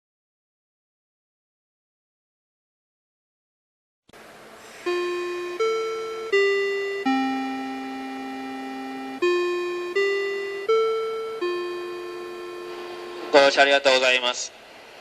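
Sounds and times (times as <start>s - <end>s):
electronic bell chime melody: 4.8s - 13.6s.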